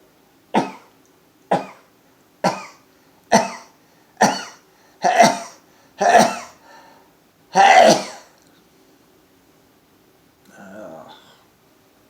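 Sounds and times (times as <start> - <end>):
man sneezing: 4.2 - 6.6, 7.6 - 8.3.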